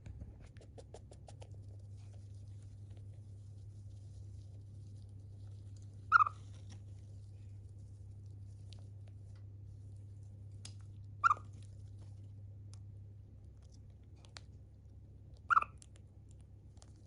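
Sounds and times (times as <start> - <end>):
low steady hum: 0.0 - 17.0
chipmunk chirps: 6.1 - 6.4, 11.2 - 11.5, 15.4 - 15.8.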